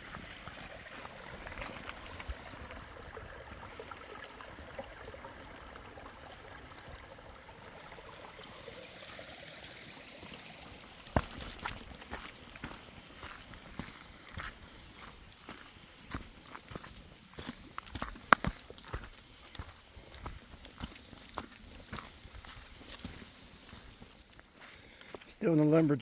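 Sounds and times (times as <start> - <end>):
footsteps on rocky trail: 0.0 - 2.4, 11.0 - 25.7
running water stream: 0.0 - 26.0.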